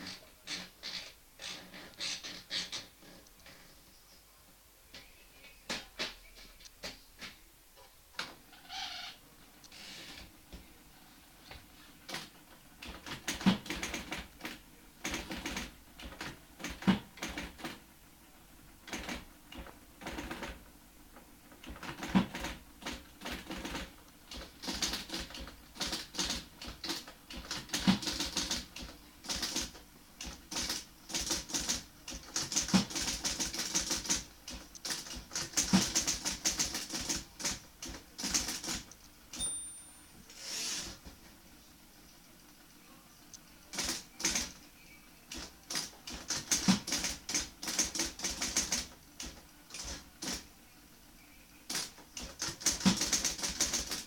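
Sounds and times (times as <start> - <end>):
typewriter bell ring: 39.4 - 40.2.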